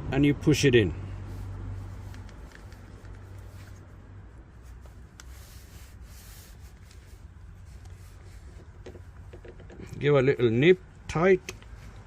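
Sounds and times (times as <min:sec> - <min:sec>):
rubbing and small clicks of parts: 0:01.8 - 0:03.9, 0:04.6 - 0:10.5, 0:11.2 - 0:12.0.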